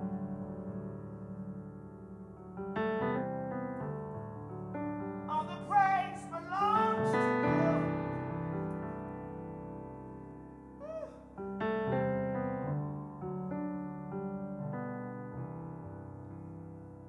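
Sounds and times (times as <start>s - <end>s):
slow keyboard chords: 0.0s - 17.0s
person singing wordless phrase: 5.3s - 8.1s.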